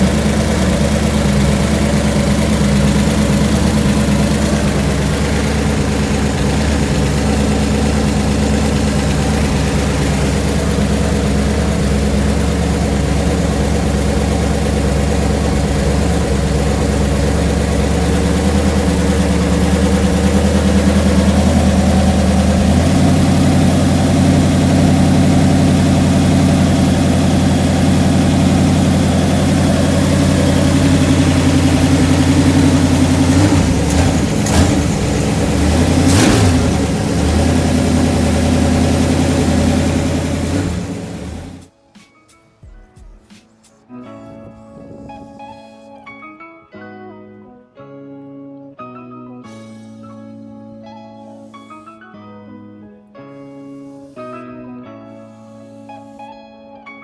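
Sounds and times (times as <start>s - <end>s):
car engine idling: 0.0s - 41.7s.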